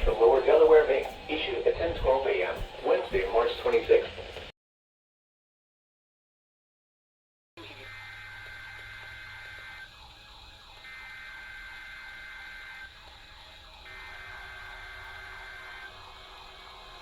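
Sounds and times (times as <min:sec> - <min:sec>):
high electronic alarm beep: 0:07.6 - 0:17.0.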